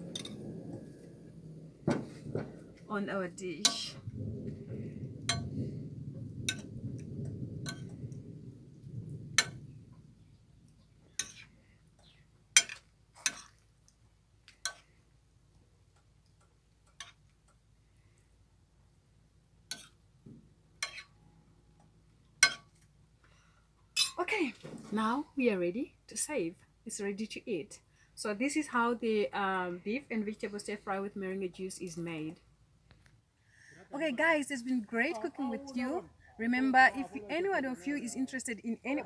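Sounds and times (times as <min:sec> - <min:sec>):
low steady rumble: 0:00.0 - 0:12.7
utensil clinking against wok: 0:22.4 - 0:22.8, 0:24.0 - 0:24.2.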